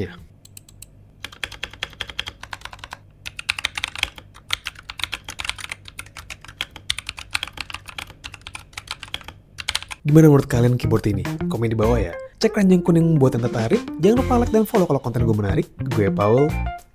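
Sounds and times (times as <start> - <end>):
mechanical keyboard typing: 0.5 - 10.0.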